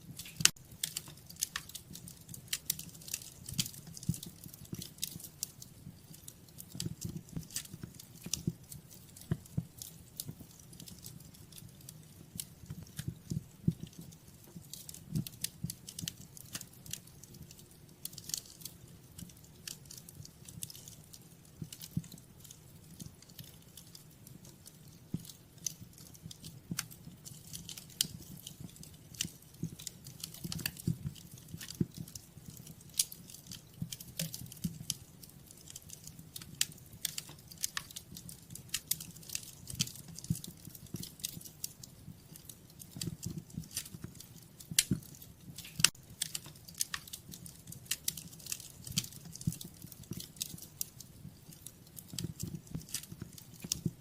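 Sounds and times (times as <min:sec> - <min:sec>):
low rumble of flames: 0:00.0 - 0:54.0
wood fire crackling: 0:00.0 - 0:54.0.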